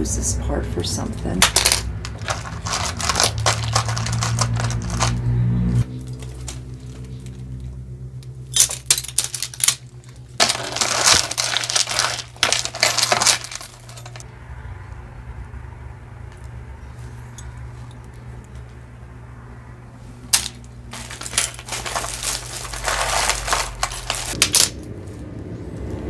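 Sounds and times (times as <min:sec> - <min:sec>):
low steady hum: 0:00.0 - 0:26.0
metal jewelry clicking and rattling: 0:01.4 - 0:05.2, 0:08.5 - 0:14.2, 0:20.4 - 0:24.4.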